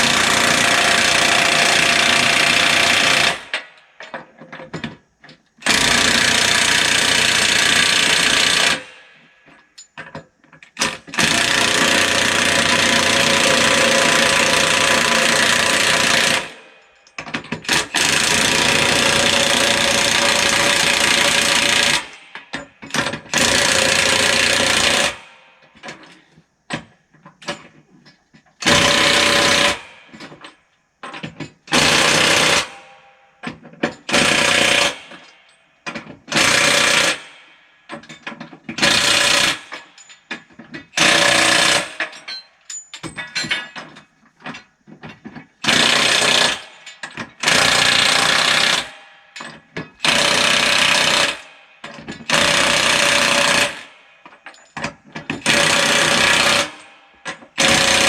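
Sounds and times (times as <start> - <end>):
impact wrench hammering lug nuts: 33.4 - 43.9, 45.6 - 58.0.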